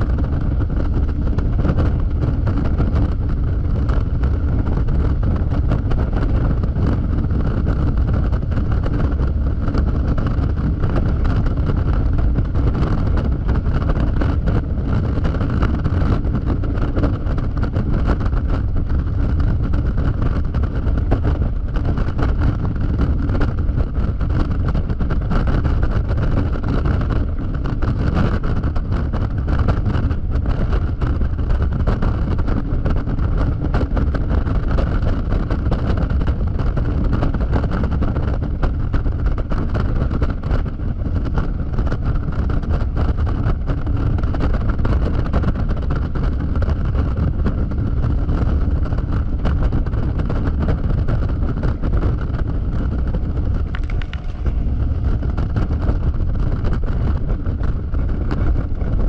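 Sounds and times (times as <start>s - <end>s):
road noise: 0.0s - 59.0s
wind rush on microphone: 0.0s - 59.0s
scooter engine running: 49.5s - 59.0s.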